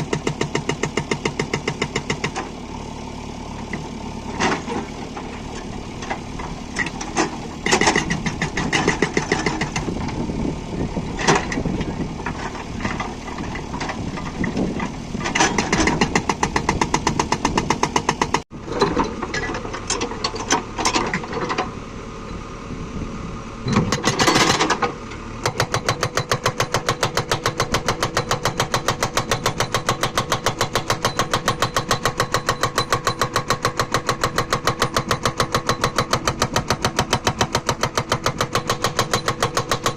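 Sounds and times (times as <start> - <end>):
rock breaker hammering stone: 0.0 - 2.4, 25.4 - 39.9
diesel engine under load: 0.0 - 39.9
metal clanks and knocks: 3.7 - 10.2, 11.2 - 21.7, 23.7 - 39.9.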